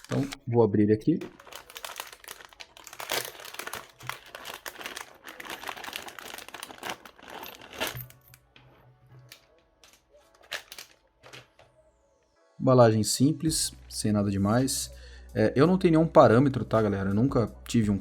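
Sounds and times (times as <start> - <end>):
plastic packaging crinkling: 0.0 - 0.4, 1.2 - 8.4, 9.3 - 11.6.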